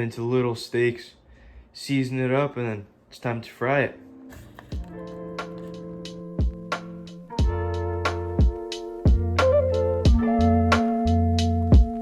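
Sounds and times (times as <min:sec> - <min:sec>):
deep kick drum: 0:08.4 - 0:09.4.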